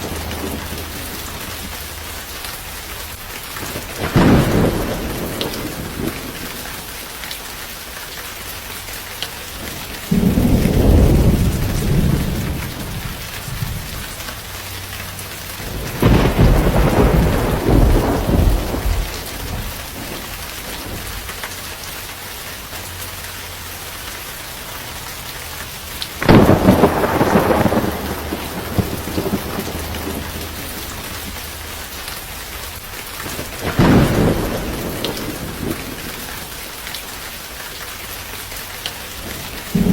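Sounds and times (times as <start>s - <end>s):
thunder rolling: 0.0s - 2.4s, 3.2s - 6.9s, 9.6s - 14.6s, 15.5s - 21.4s, 26.2s - 31.8s, 33.2s - 36.6s, 39.2s - 39.9s
heavy rain falling: 0.0s - 39.9s.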